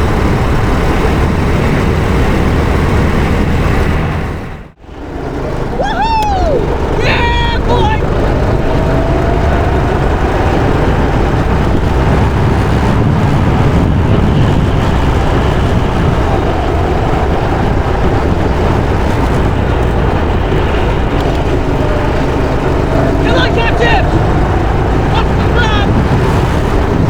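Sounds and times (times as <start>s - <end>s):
go-kart engine running: 0.0s - 27.0s
rushing wind noise: 0.0s - 27.0s.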